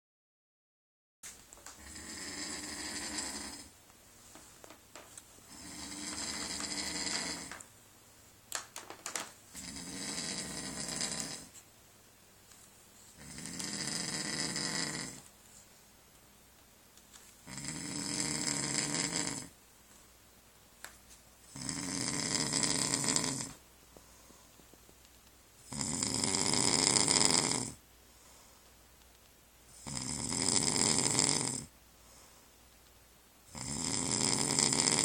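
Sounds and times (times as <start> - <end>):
quiet breaths: 1.4 - 8.4, 9.0 - 16.3, 16.9 - 35.0
man snoring loudly: 1.8 - 3.7, 5.5 - 7.6, 9.5 - 11.5, 13.2 - 15.2, 17.5 - 19.5, 21.5 - 23.5, 25.7 - 27.8, 29.8 - 31.7, 33.5 - 35.0.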